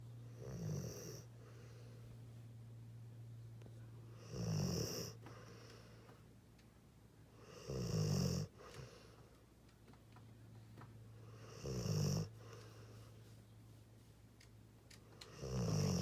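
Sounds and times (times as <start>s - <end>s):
steady low hum: 0.0s - 16.0s
dog snoring: 0.3s - 1.9s, 4.1s - 6.0s, 7.3s - 9.1s, 11.2s - 12.9s, 15.2s - 16.0s.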